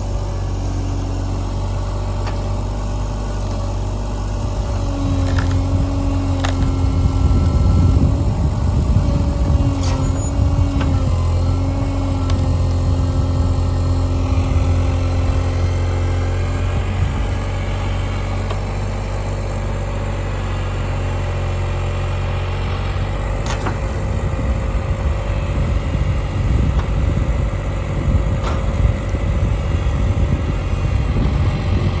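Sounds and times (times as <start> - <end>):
diesel engine running: 0.0 - 32.0
wavering whine: 4.2 - 18.2.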